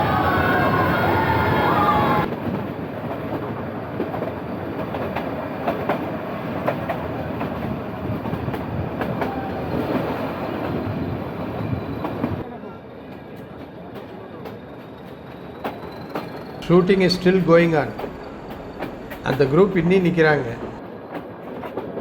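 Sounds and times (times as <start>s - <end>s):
train wheels rumbling: 0.0s - 12.4s, 13.2s - 22.0s
wheels clicking over rail joints: 13.9s - 21.9s
wavering squeal: 15.4s - 20.8s.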